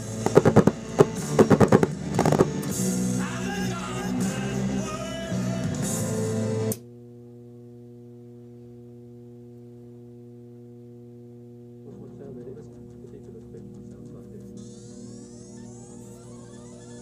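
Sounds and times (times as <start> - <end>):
music with singing and guitar: 0.0 - 6.8
steady electrical hum: 0.0 - 17.0.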